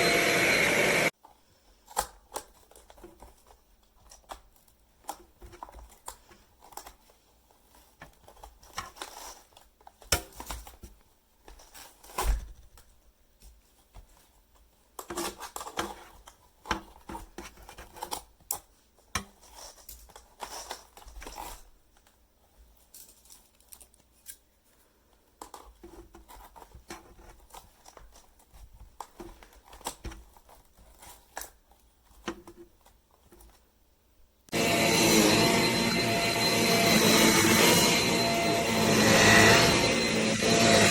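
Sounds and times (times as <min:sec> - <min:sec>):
plastic parts clicking and knocking: 0:01.2 - 0:24.4, 0:25.1 - 0:33.8.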